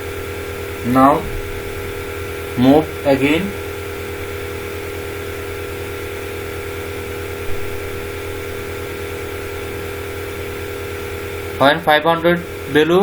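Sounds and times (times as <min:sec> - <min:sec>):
steady higher tones: 0:00.0 - 0:06.1
electric hum: 0:00.0 - 0:13.0
low pulsing buzz: 0:00.0 - 0:13.0.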